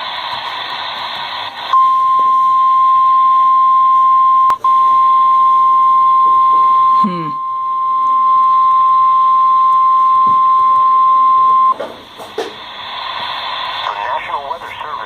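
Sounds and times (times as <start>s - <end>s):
radio static hiss: 0.0s - 2.7s, 11.5s - 15.0s
high steady alarm beep: 1.7s - 11.8s.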